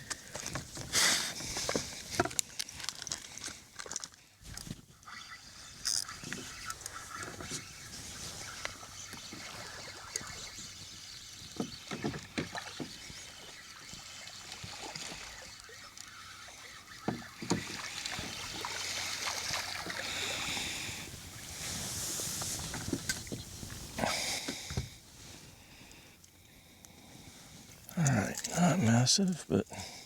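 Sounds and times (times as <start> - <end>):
knocks and clatter on a kayak: 0.1 - 2.4, 8.5 - 13.6, 16.8 - 20.0, 22.5 - 23.8
hissy splashing: 6.2 - 22.6.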